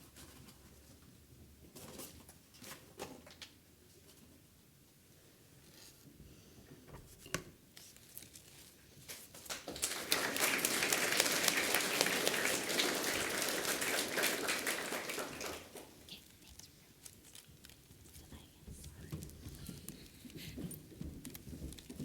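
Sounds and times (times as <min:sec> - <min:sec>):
large audience clapping: 0:09.5 - 0:16.0.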